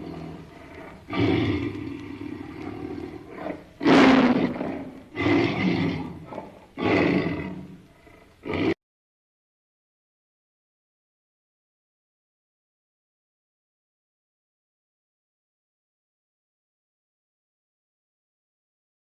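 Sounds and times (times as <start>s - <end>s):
tiger roaring: 0.0s - 8.8s.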